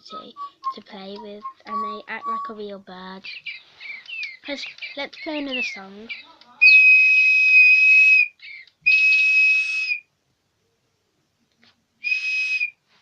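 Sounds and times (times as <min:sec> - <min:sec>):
toy bird whistling through speaker: 0:00.0 - 0:02.6, 0:05.2 - 0:10.1, 0:12.0 - 0:12.8.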